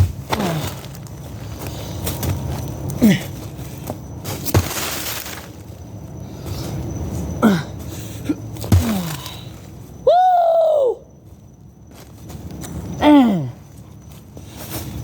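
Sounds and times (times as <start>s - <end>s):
watermelon thump: 4.5s - 5.5s, 8.6s - 9.4s
watermelon cracking and splattering: 8.7s - 9.4s.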